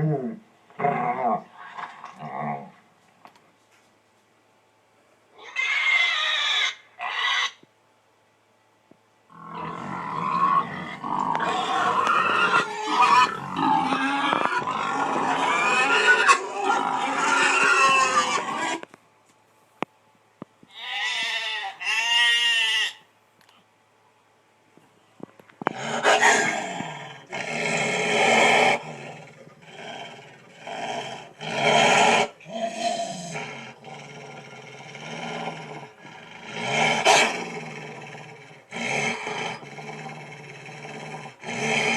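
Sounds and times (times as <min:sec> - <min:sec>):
animal growling and roaring: 0:00.0 - 0:02.8, 0:09.3 - 0:18.8, 0:25.6 - 0:41.9
animal calls: 0:09.4 - 0:18.9.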